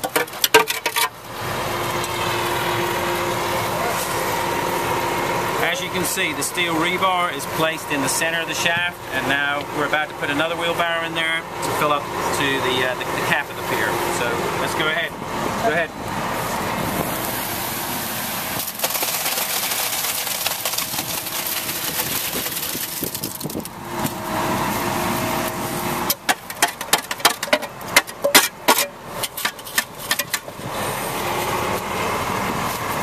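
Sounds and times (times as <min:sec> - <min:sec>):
sharp knocks and scrapes: 0:00.0 - 0:01.2, 0:26.1 - 0:30.6
engine running: 0:00.0 - 0:33.0
wet concrete pouring: 0:00.0 - 0:33.0.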